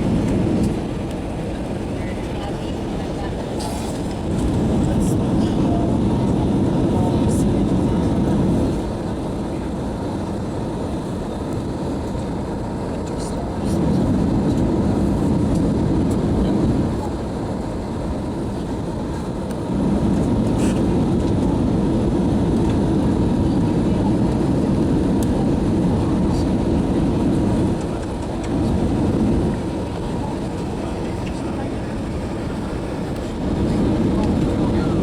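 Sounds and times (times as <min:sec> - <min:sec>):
airliner cabin rumble: 0:00.0 - 0:35.0.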